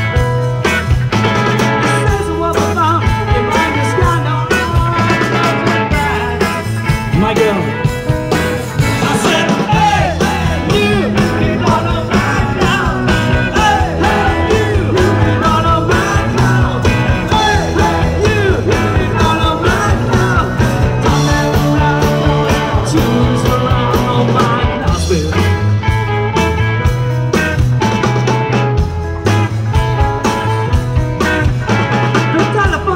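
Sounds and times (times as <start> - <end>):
bass: 0.0 - 32.9
drum beat: 0.2 - 25.6.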